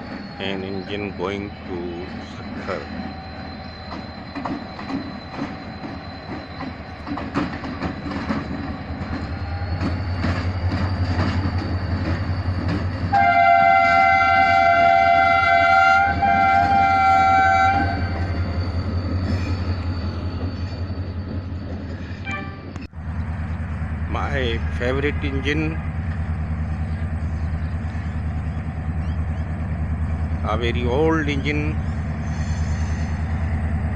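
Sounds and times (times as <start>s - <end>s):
locomotive engine drone: 0.0s - 33.9s
wheels clicking over rail joints: 3.9s - 13.2s
locomotive air horn chord: 13.1s - 18.2s.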